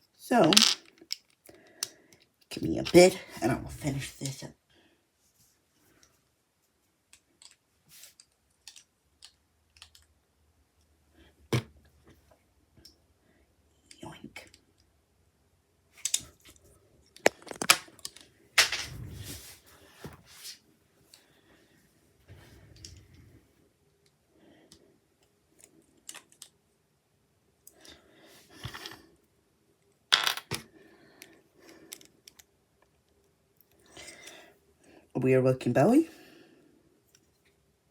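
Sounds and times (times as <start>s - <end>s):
plastic toy bricks clicking together: 0.4s - 2.2s, 8.2s - 10.2s, 17.2s - 18.2s.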